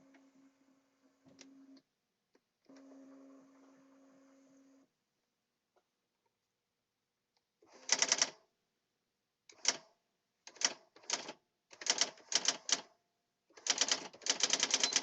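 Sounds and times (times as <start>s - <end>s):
electronic typewriter striking: 13.7s - 15.0s.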